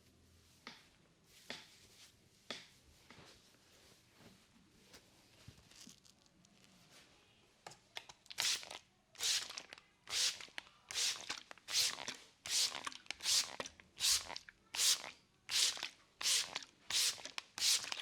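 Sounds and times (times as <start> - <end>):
faint soft rustling: 0.0 - 7.6.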